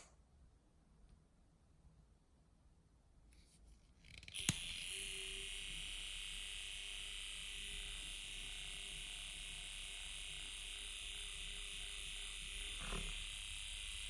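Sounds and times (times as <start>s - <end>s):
electric whisk buzzing: 4.3s - 14.0s.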